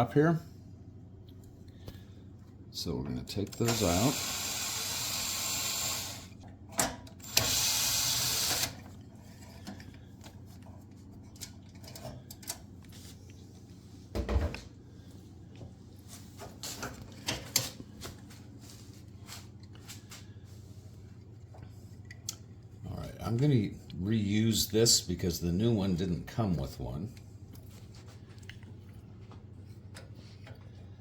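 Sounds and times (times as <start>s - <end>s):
power drill running: 3.5s - 6.4s, 7.1s - 8.9s.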